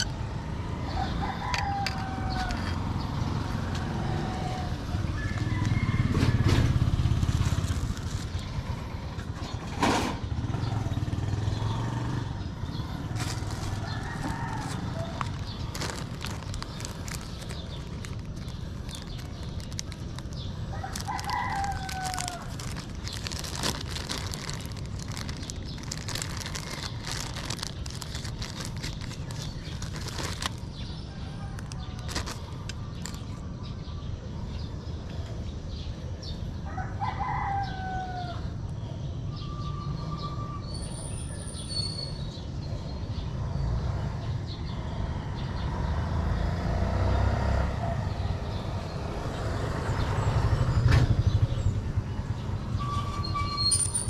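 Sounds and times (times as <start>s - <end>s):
rooster crowing: 0.8s - 3.0s, 4.2s - 6.9s, 13.7s - 15.3s, 20.7s - 22.6s, 36.6s - 38.6s.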